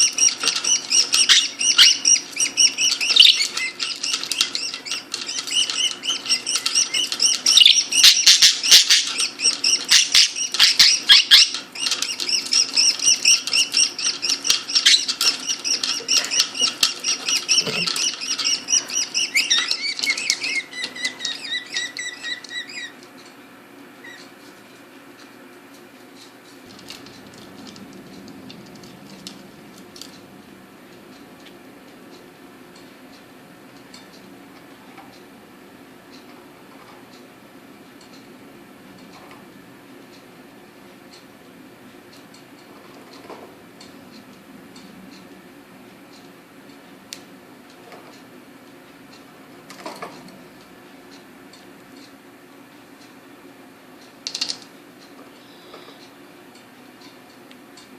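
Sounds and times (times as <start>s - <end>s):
budgerigars chattering and chirping: 0.0s - 22.9s.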